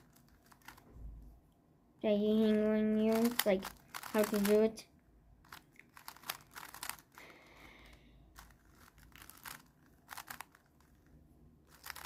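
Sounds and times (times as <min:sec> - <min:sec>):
puzzle cube clicking: 0:00.0 - 0:00.8, 0:03.1 - 0:04.6, 0:05.4 - 0:11.1, 0:11.7 - 0:12.0.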